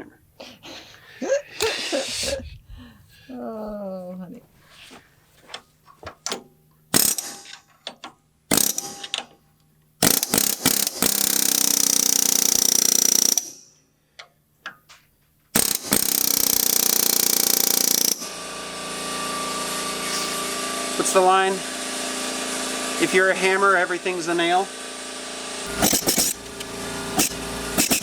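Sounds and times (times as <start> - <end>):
power tool hammering: 6.9 - 7.7, 8.5 - 9.3, 10.0 - 13.7, 15.5 - 28.0
machine hum: 18.2 - 28.0
sharp metal knocks: 25.7 - 26.5.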